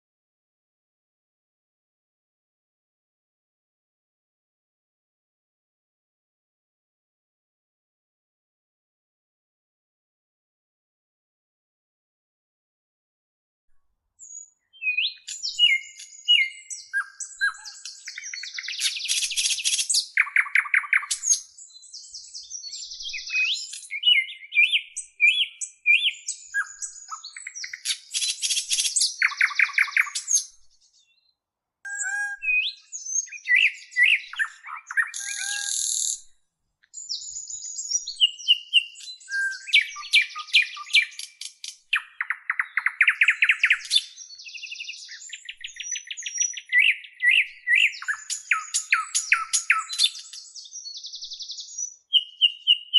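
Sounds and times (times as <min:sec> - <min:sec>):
bird singing: 0:14.2 - 0:36.3, 0:37.0 - 0:52.9.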